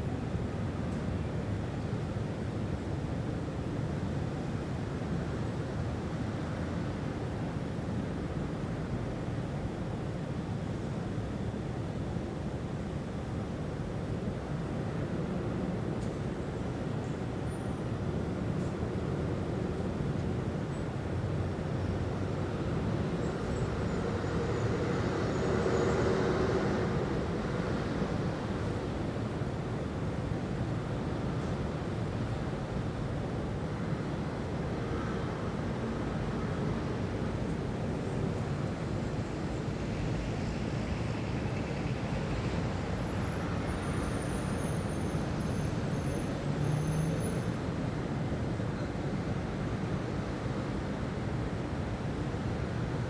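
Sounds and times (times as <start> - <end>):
distant traffic rumble: 18.1 - 53.0.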